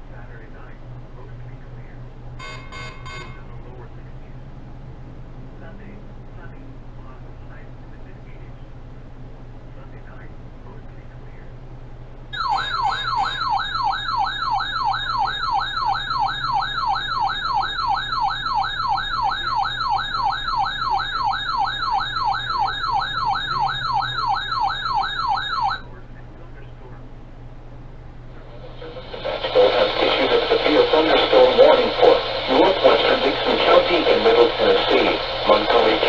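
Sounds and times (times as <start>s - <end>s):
low steady hum: 0.0s - 36.0s
electronic siren alert tone: 2.4s - 3.6s, 12.4s - 25.8s.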